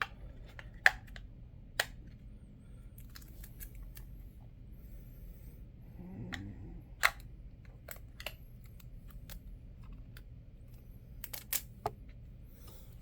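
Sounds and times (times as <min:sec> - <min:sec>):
plastic parts clicking and tapping: 0:00.0 - 0:02.2, 0:06.3 - 0:12.2.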